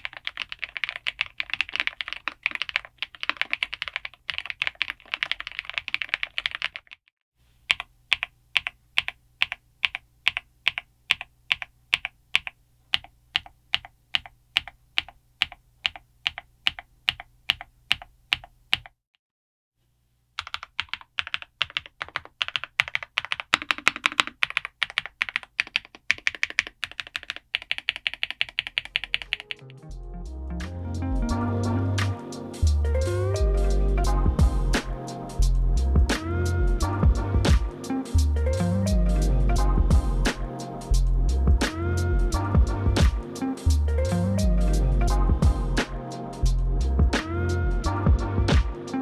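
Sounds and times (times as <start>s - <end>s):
mechanical keyboard typing: 0.0s - 7.0s, 7.6s - 19.0s, 20.4s - 29.6s
music: 29.1s - 49.0s.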